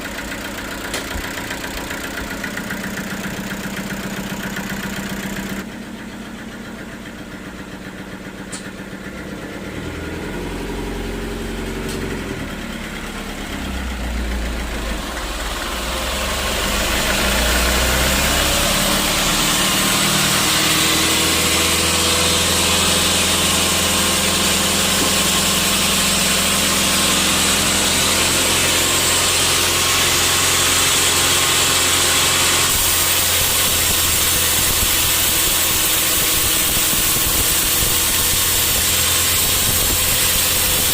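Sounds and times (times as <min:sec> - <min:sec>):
sawmill machine hum: 0:00.0 - 0:40.9
saw blade cutting log: 0:16.6 - 0:40.9.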